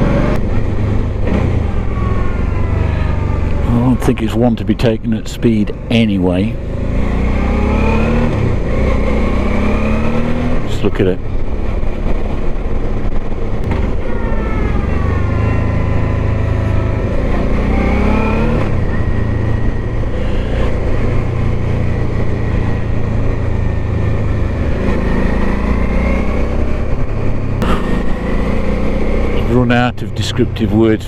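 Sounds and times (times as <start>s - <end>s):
motorcycle engine revving: 0.0s - 4.6s, 5.3s - 31.0s.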